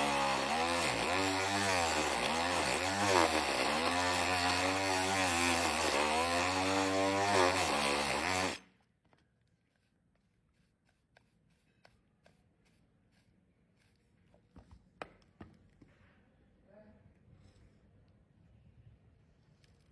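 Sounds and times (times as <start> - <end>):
power tool motor running: 0.0 - 8.6.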